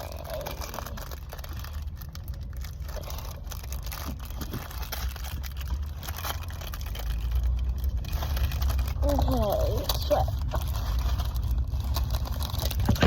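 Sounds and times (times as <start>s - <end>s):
car cabin rumble: 0.0s - 13.0s
plastic wrapper crinkling and tearing: 0.0s - 13.0s.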